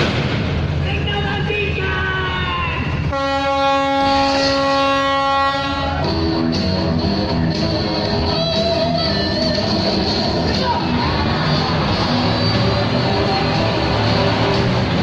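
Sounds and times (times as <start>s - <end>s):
long horn-like tone: 3.1s - 6.0s
loud show music: 4.5s - 15.0s.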